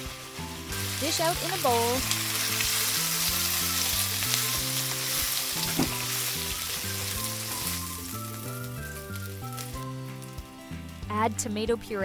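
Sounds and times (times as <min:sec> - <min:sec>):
food sizzling in hot oil: 0:00.0 - 0:11.9
soft background music: 0:00.0 - 0:12.0
sharp knock: 0:05.7 - 0:06.0.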